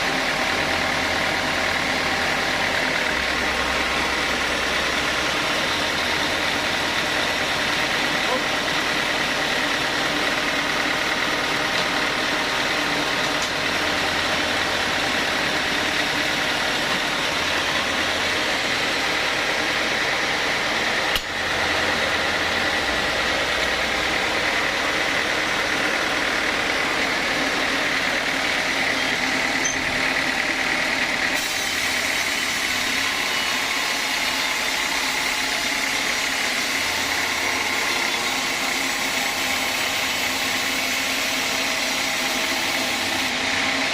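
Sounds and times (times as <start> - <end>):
sawmill machinery whining: 0.0 - 43.9
sharp click: 21.1 - 21.3.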